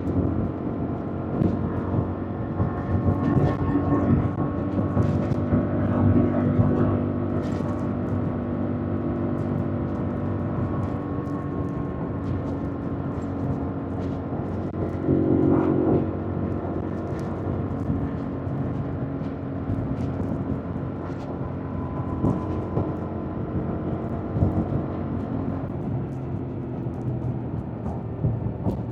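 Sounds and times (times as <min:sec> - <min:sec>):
motorcycle engine running: 0:00.0 - 0:28.9.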